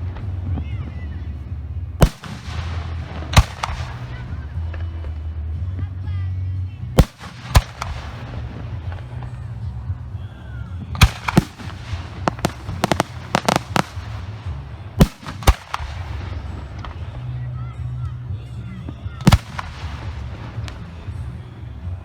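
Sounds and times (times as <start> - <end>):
steady low rumble: 0.0 - 22.0
firework shells bursting: 2.0 - 4.2, 7.0 - 9.3, 11.0 - 17.1, 19.2 - 21.3.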